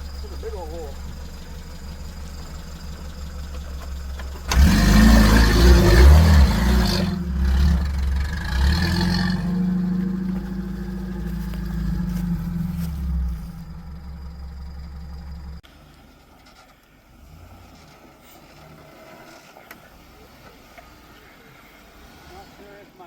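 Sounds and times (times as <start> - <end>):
off-road vehicle engine revving: 0.0 - 23.0.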